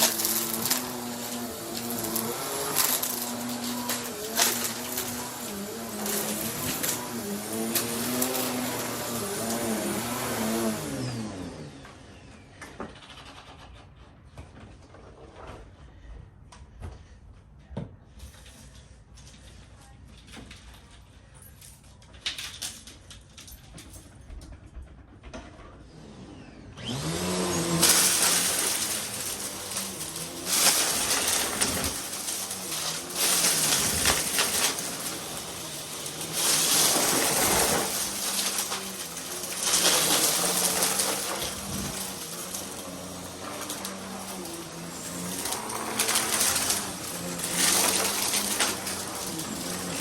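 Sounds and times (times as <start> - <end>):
vacuum cleaner running: 0.0 - 13.3, 24.7 - 50.0.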